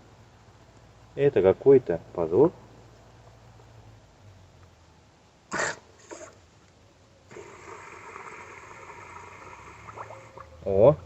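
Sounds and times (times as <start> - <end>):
water pouring into a tank: 7.3 - 10.6.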